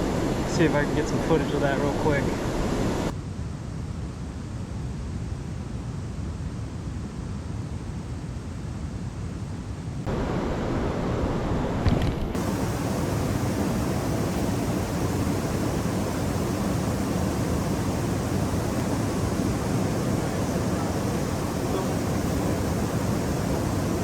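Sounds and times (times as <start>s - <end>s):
river water pouring over dam: 12.4s - 24.0s.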